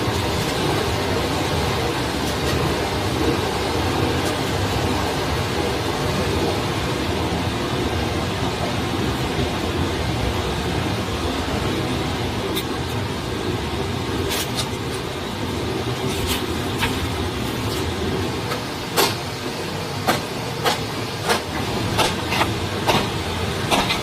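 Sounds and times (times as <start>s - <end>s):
forest stream rushing: 0.0s - 24.0s.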